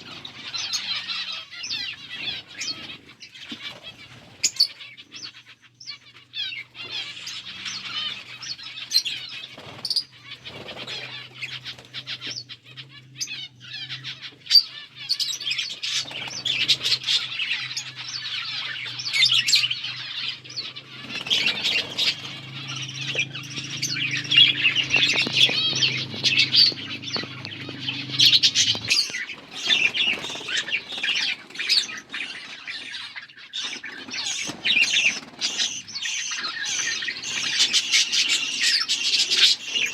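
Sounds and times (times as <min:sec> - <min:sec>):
budgerigars chirping: 0:00.0 - 0:39.9
low steady hum: 0:15.6 - 0:33.1.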